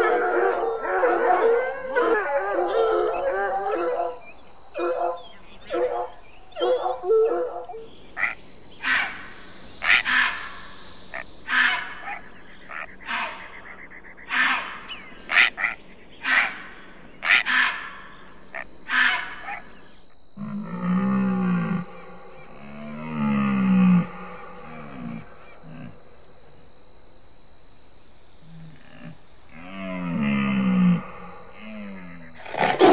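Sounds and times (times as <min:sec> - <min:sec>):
low drawn-out animal calls: 0:00.0 - 0:32.9
short sharp animal calls: 0:08.2 - 0:19.6.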